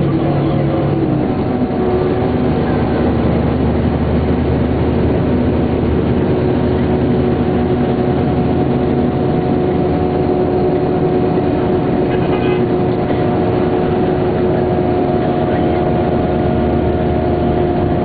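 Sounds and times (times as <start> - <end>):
bus engine droning with whine: 0.0 - 18.0.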